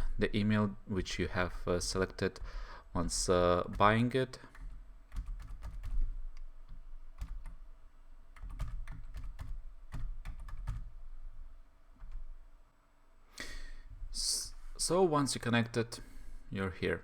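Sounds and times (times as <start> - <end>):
typing on computer keyboard: 3.6 - 7.6, 8.3 - 11.0.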